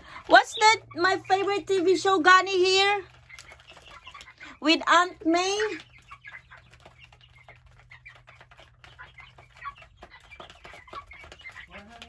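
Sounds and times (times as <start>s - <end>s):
chickens pecking taps: 0.0s - 12.0s
chicks chirping and clucking: 0.0s - 12.0s.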